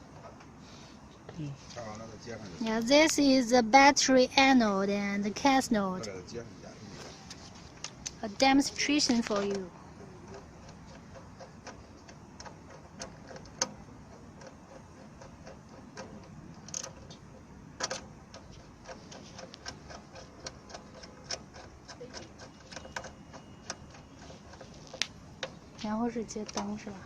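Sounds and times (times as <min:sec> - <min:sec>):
low background hiss: 0:00.0 - 0:19.7
light clicks and taps: 0:10.3 - 0:26.9.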